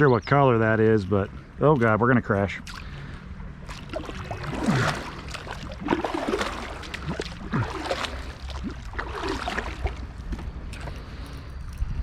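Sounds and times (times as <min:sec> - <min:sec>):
water splashing and gurgling: 0:00.4 - 0:11.5.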